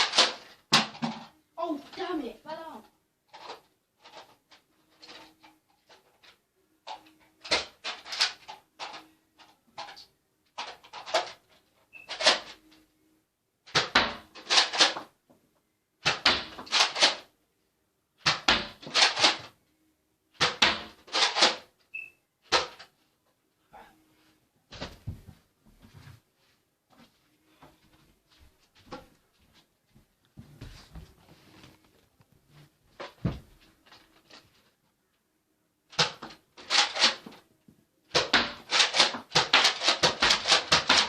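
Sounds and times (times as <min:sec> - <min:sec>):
plastic toy blaster clacking: 0:13.7 - 0:15.0, 0:16.0 - 0:17.3, 0:18.3 - 0:19.5, 0:20.4 - 0:21.7, 0:35.9 - 0:37.4, 0:38.1 - 0:41.0.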